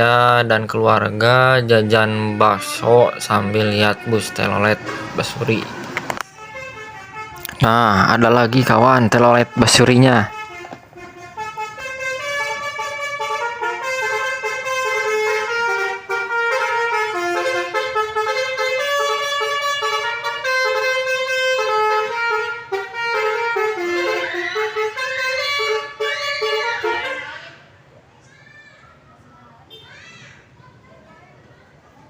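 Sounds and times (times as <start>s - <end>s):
musical bus horn tune: 1.2s - 27.6s
siren-like whoops: 24.2s - 24.8s.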